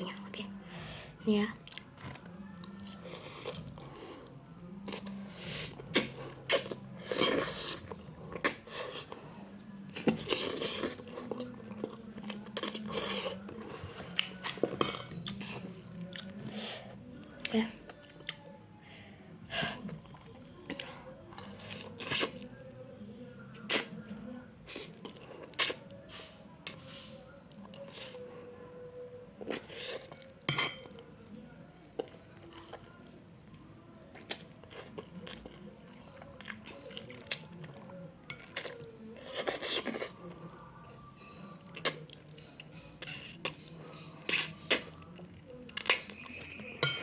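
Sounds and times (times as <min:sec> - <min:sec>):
quiet chewing: 0:00.1 - 0:47.0
person chewing noodles: 0:01.6 - 0:09.3, 0:09.9 - 0:16.4, 0:21.4 - 0:22.6, 0:24.7 - 0:25.8, 0:34.1 - 0:40.2.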